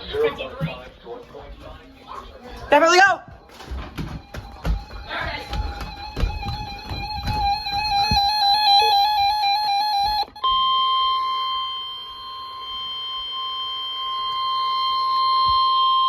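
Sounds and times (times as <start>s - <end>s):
steady warning alarm tone: 4.3s - 16.0s.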